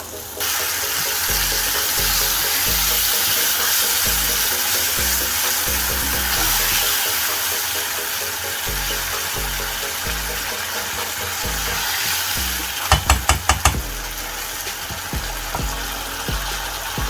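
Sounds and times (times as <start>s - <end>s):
background music with bass beat: 0.0s - 17.0s
food sizzling in a pan: 0.1s - 12.9s.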